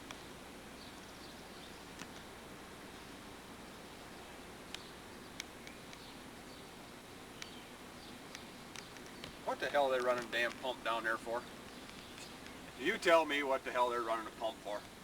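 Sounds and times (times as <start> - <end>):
faint background noise: 0.0 - 15.0
sharp clicks: 8.3 - 10.8.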